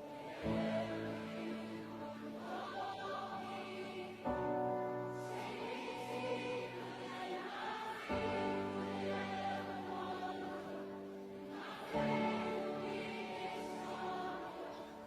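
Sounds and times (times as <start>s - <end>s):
choir singing slow worship song: 0.0s - 15.0s.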